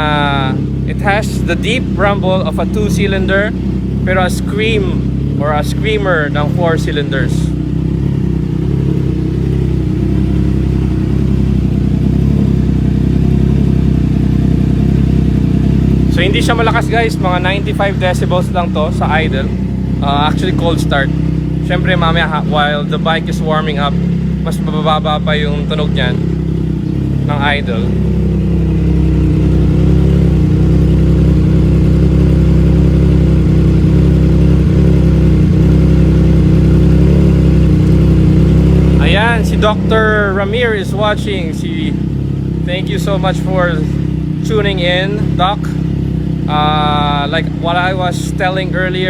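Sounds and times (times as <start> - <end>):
motorcycle engine idling: 0.0 - 49.0.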